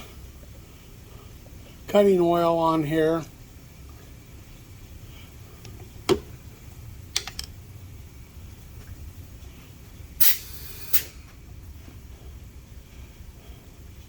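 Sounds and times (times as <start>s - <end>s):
sharp metallic clicks: 7.2s - 7.5s
short loud hisses: 10.2s - 11.2s.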